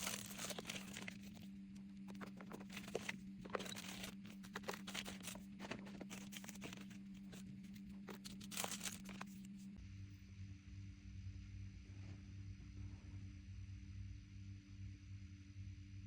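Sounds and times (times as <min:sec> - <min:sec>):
packaging crinkling and tearing: 0:00.0 - 0:09.5.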